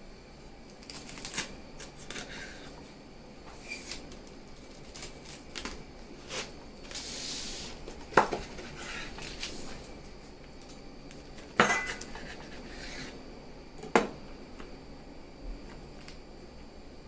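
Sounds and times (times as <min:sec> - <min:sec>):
knife crunching toasted food: 0:00.7 - 0:02.8.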